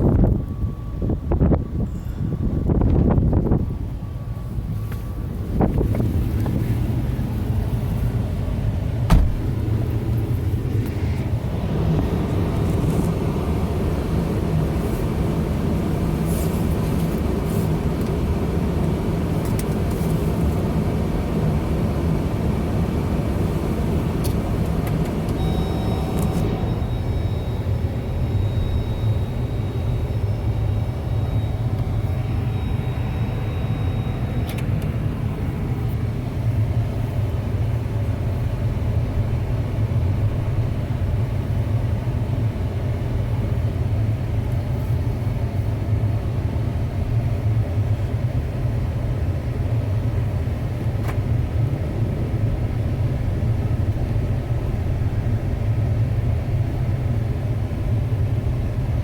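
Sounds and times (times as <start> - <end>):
faint high whine: 0.0 - 47.1
car engine and road noise: 0.0 - 59.0
click: 34.4 - 34.9.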